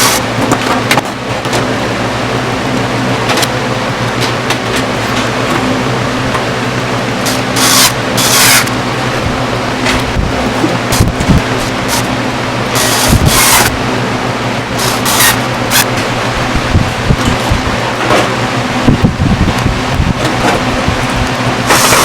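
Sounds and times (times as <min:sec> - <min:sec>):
low mechanical hum: 0:00.0 - 0:22.0.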